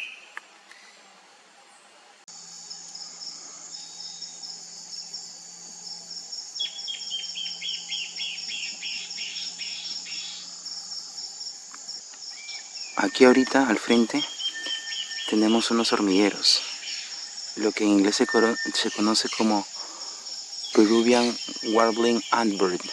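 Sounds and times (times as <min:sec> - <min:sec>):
high insect trill: 0:02.3 - 0:22.9
bird singing falling notes: 0:12.3 - 0:19.7, 0:20.6 - 0:22.9.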